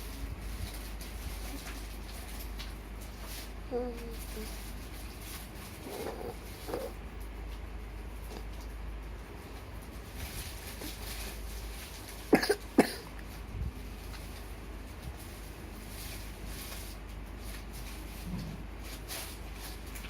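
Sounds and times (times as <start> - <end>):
person coughing: 12.3 - 13.1.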